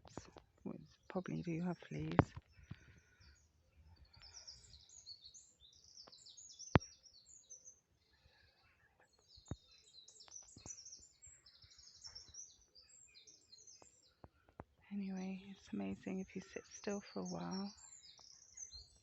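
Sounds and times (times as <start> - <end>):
songbirds singing: 0.0 - 19.0.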